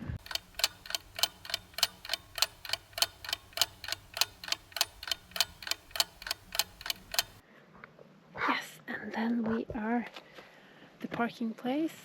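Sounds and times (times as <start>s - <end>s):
steady ticking: 0.0s - 7.4s.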